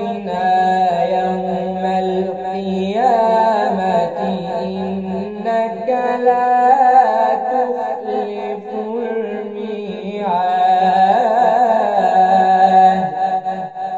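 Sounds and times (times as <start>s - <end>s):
man chanting recitation: 0.0s - 13.9s.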